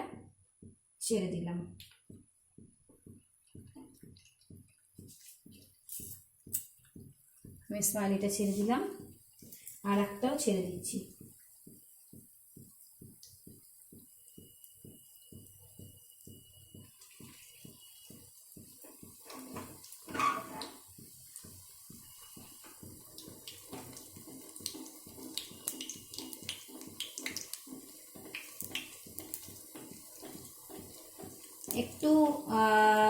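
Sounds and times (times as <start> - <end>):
snacks sizzling in hot oil: 8.0 - 33.0.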